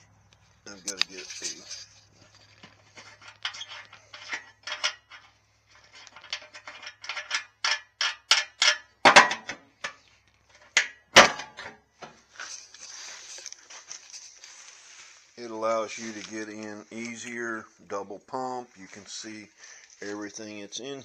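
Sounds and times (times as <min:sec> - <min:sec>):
metal parts clinking and clanking: 0:00.7 - 0:14.4.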